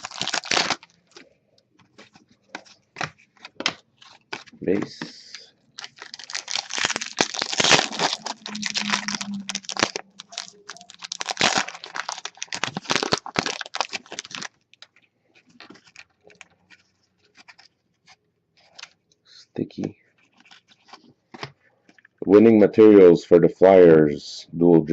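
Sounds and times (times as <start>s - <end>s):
card pack wrapper tearing: 0.0s - 1.2s, 5.3s - 17.7s
cards being handled: 1.8s - 8.1s, 11.1s - 19.0s, 20.2s - 22.0s.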